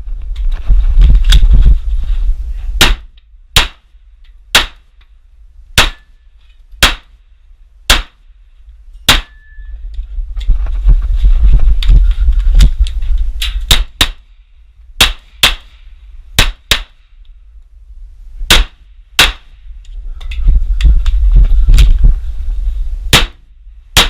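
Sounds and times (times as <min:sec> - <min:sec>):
pistol shots: 0:05.8 - 0:06.1, 0:18.5 - 0:19.5.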